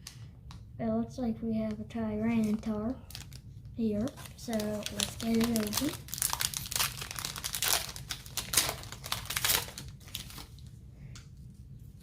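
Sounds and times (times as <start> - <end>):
foil wrapper crinkling and tearing: 2.4 - 10.7.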